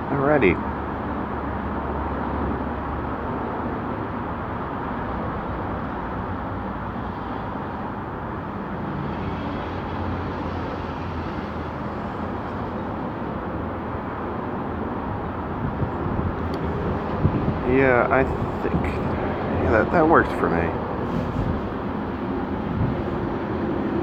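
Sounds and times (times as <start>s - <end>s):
vehicle engine rumble: 11.4s - 24.0s.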